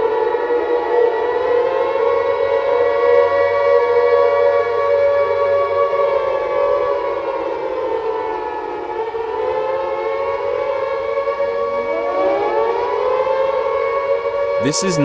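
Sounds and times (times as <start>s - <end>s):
warning siren wailing: 0.0s - 15.0s.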